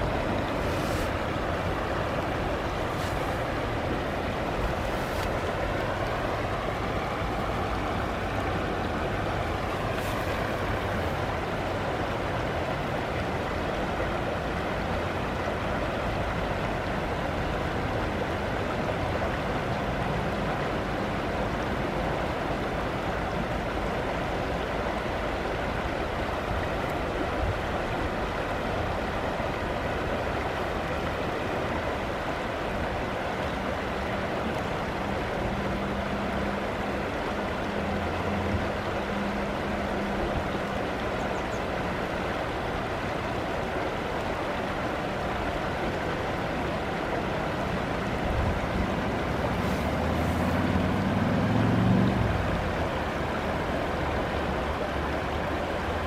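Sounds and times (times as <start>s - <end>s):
river babbling: 0.0s - 56.0s.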